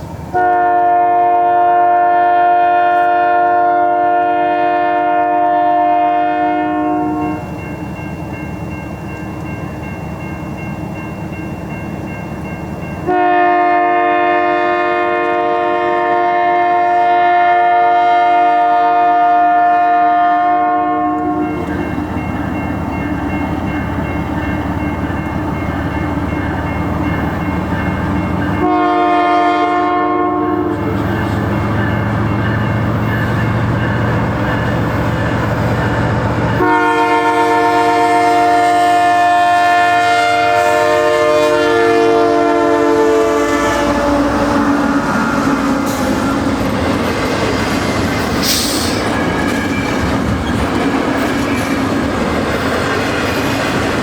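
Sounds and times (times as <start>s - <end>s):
train rumbling: 0.0s - 54.0s
locomotive air horn: 0.3s - 7.4s, 13.1s - 21.6s, 28.6s - 31.6s, 36.6s - 46.9s
train cars clattering over rails: 30.7s - 37.1s, 44.0s - 54.0s.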